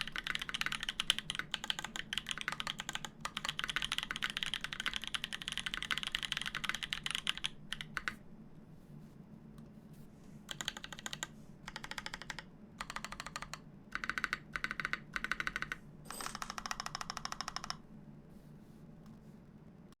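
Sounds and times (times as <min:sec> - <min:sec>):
mechanical keyboard typing: 0:00.0 - 0:08.2, 0:10.5 - 0:17.8.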